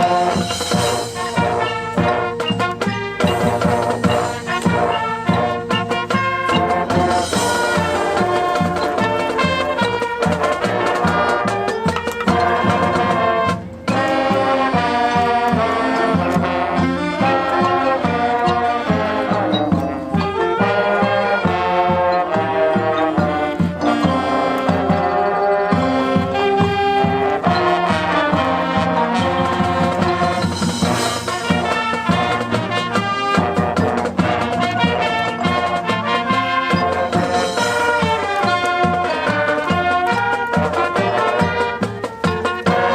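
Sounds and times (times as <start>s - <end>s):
brass melody: 0.0s - 42.9s
drumline percussion: 0.0s - 42.9s.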